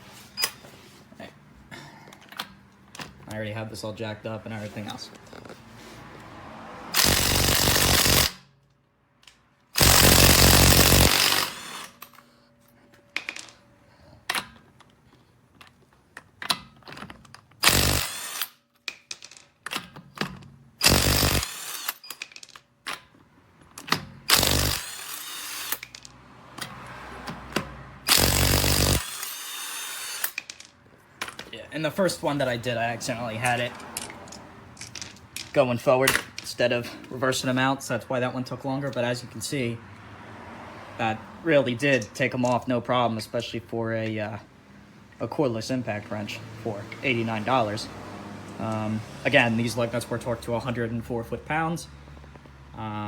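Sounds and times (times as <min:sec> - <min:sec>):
impact wrench hammering lug nuts: 0:06.9 - 0:08.5, 0:09.8 - 0:12.1, 0:16.4 - 0:19.1, 0:19.7 - 0:22.3, 0:23.8 - 0:26.1, 0:27.5 - 0:30.6.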